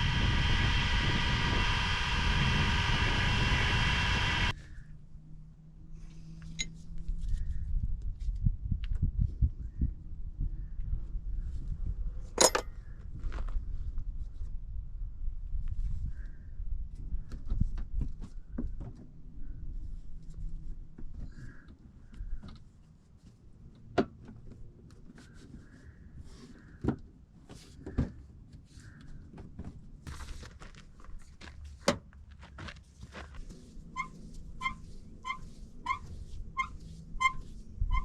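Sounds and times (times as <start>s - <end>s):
low rumble: 0.0s - 5.6s
tools knocking and tapping: 12.4s - 12.6s
sharp metallic clinks: 12.4s - 12.7s.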